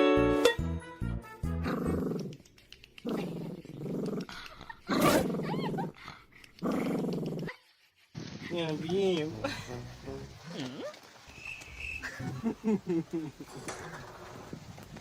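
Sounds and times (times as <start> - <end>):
dog growling: 1.6 - 2.4, 3.0 - 7.6.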